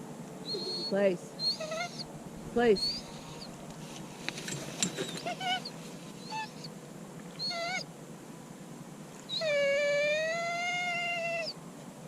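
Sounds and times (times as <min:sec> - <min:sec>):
dog whining: 0:00.4 - 0:02.1, 0:02.8 - 0:03.6, 0:04.8 - 0:06.8, 0:07.4 - 0:07.9, 0:09.3 - 0:11.6.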